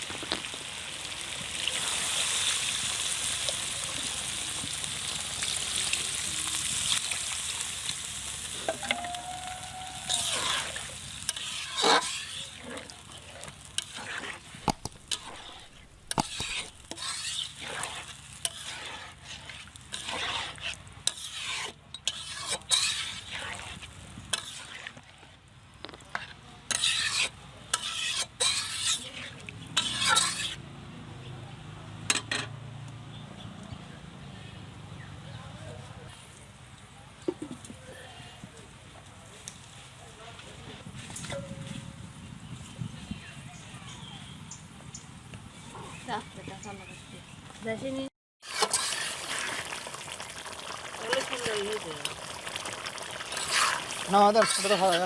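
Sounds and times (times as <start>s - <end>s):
curry sizzling in a pan: 0.0s - 25.2s, 26.2s - 30.6s, 48.4s - 55.0s
scrapes of stirring: 8.5s - 30.6s, 48.4s - 55.0s.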